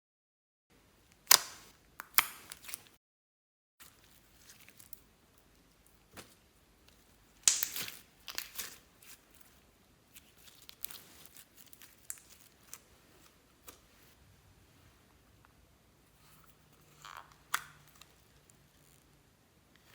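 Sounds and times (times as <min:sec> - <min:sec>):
slime crinkling and crackling: 0:01.2 - 0:03.0, 0:06.1 - 0:14.0.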